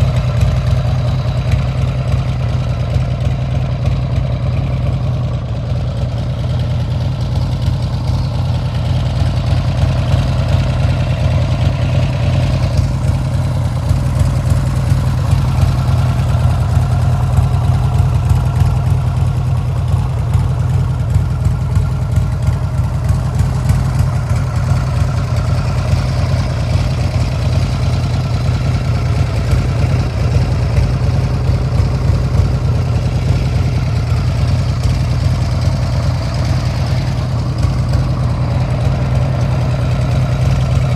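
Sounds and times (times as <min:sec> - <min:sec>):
motorcycle engine idling: 0:00.0 - 0:40.9.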